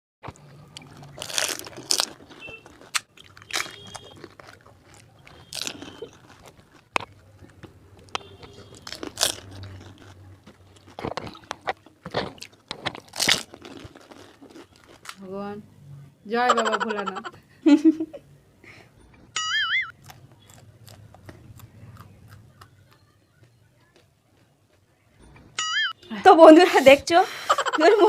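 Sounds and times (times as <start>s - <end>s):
chewing: 0.2s - 15.2s, 19.9s - 25.6s
crunching crisp shells: 0.3s - 15.2s, 19.4s - 24.8s.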